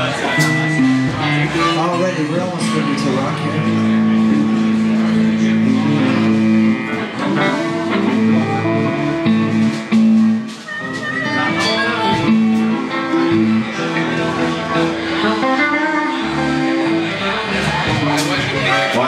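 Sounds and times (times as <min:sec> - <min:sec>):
blues band playing: 0:00.0 - 0:19.0
electric guitars: 0:00.0 - 0:19.0.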